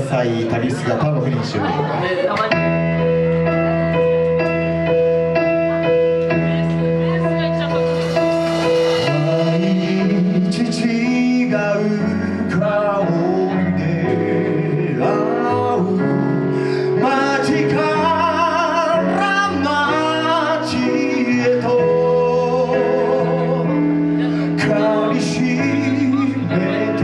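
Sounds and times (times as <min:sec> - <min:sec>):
band playing slow ballad: 0:00.0 - 0:27.0
lead vocal singing with vibrato: 0:08.8 - 0:27.0.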